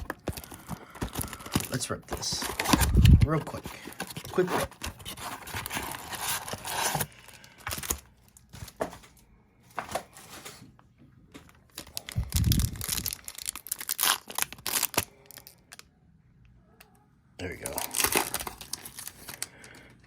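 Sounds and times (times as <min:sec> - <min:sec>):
packaging tearing and crinkling: 0:00.0 - 0:08.9, 0:11.7 - 0:15.8, 0:17.6 - 0:19.5.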